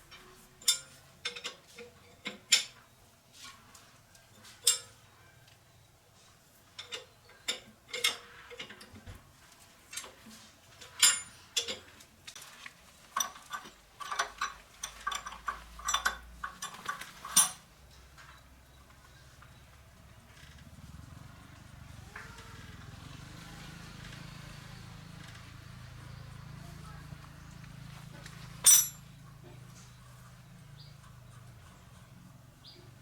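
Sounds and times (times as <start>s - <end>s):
metal tools clinking: 0.1s - 1.6s, 10.8s - 11.9s, 13.2s - 17.6s, 28.6s - 29.1s.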